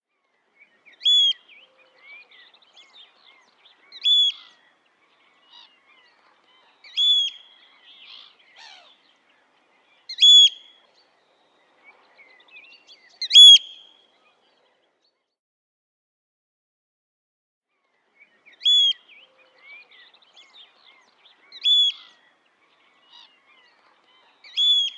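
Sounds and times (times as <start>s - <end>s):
faint bird chirps: 0.1s - 15.2s, 17.8s - 24.9s
high piping bird calls: 0.6s - 14.0s, 18.1s - 24.9s.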